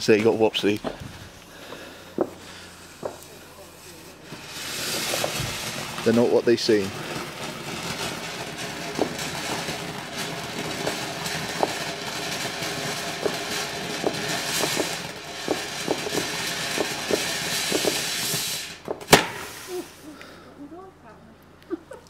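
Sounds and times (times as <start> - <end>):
firework fountain hissing: 0.0 - 20.7
small crackles and pops: 6.8 - 12.5, 13.2 - 18.0.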